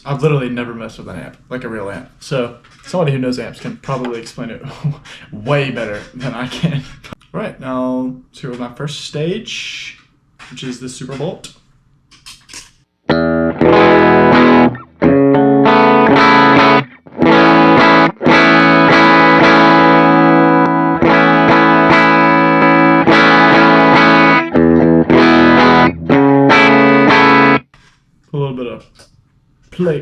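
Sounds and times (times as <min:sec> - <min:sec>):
overdriven electric guitar chords: 0:13.1 - 0:27.6.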